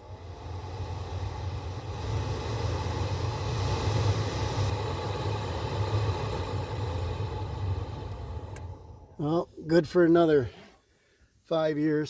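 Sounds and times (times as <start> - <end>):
car blower fan whooshing: 0.0 - 9.6.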